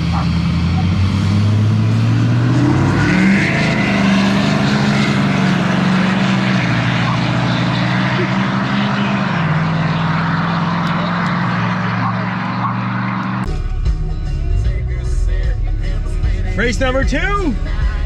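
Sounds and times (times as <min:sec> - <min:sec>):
truck engine revving hard: 0:00.0 - 0:13.5.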